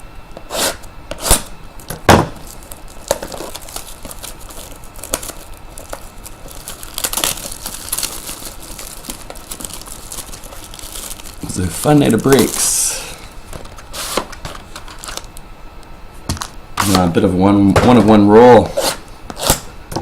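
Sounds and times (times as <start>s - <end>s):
plastic wrapping crinkling and tearing: 2.4s - 12.8s, 13.6s - 15.3s.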